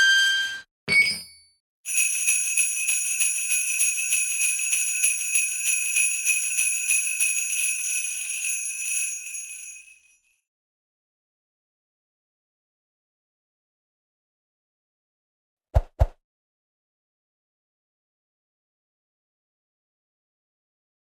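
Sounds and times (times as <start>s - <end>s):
sleigh bells jingling: 1.9s - 10.2s.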